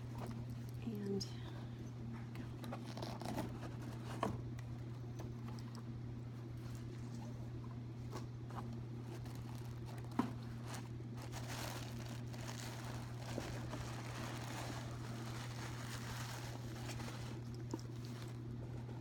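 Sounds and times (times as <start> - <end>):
steady low hum: 0.0 - 19.0
paper packaging rustling: 8.0 - 19.0.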